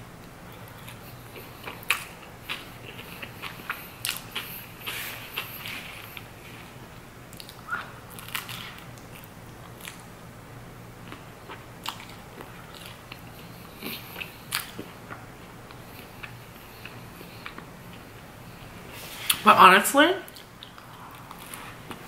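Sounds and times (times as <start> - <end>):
chewing crunchy toast: 0.5 - 6.4, 7.3 - 10.1, 11.0 - 18.7.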